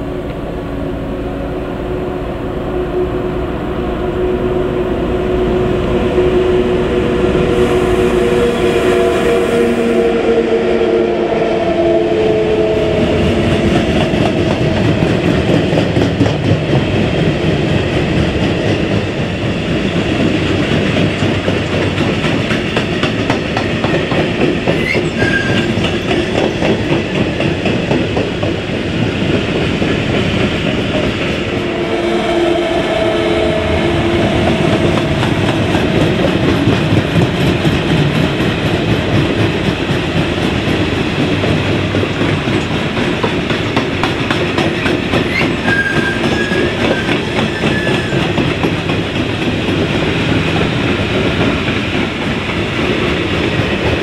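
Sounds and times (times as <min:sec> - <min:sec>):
train wheels clattering over rails: 0:13.0 - 0:31.7, 0:33.8 - 0:54.0.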